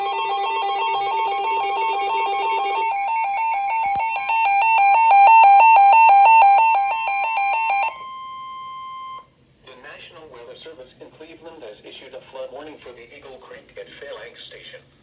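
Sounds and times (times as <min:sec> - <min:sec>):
alternating electronic alert beeps: 0:00.0 - 0:09.2.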